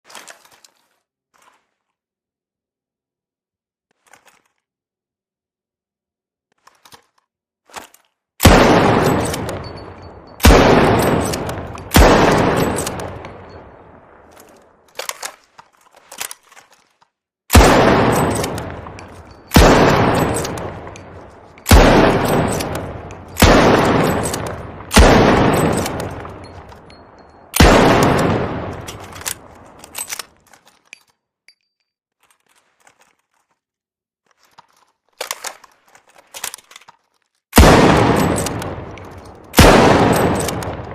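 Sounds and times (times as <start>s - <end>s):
rifle shots with echo: 8.4s - 14.4s, 17.5s - 30.1s, 37.6s - 40.9s.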